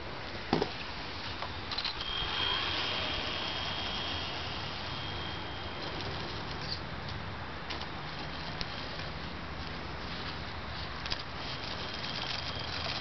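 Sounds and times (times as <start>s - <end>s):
noisy hiss: 0.0s - 13.0s
electric motor whine: 1.4s - 9.0s.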